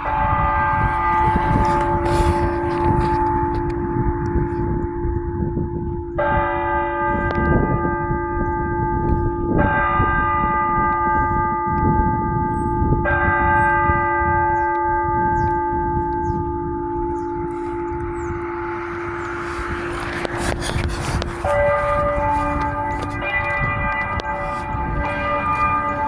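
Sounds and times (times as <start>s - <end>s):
church bell tolling: 0.0s - 20.6s, 21.3s - 26.0s.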